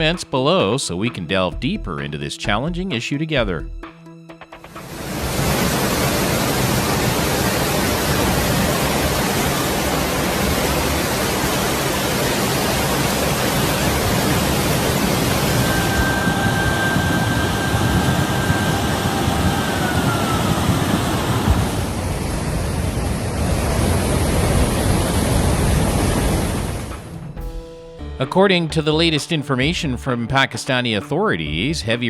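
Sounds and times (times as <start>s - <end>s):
rushing storm noise: 4.6s - 27.6s
thin high tone: 14.6s - 22.0s.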